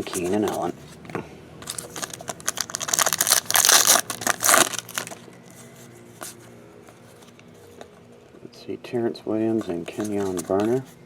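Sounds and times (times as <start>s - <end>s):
plastic wrapper crinkling and tearing: 1.6s - 5.3s.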